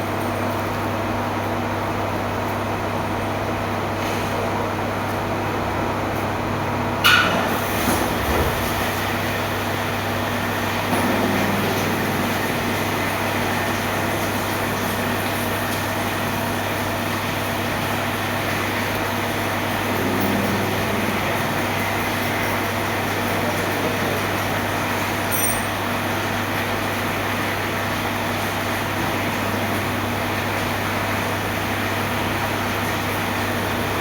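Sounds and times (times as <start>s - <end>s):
machine humming: 7.1s - 25.2s.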